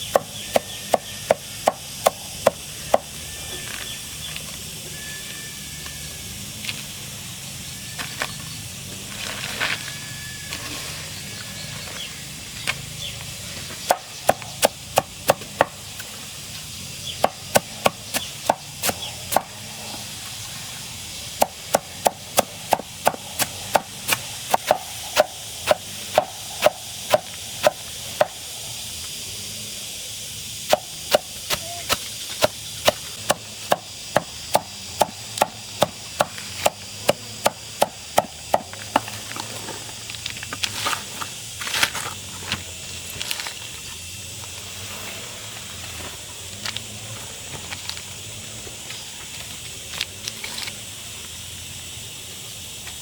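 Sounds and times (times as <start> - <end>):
blade chopping plant stalk: 13.8 - 16.1, 17.2 - 19.6, 21.4 - 28.4, 30.7 - 39.1.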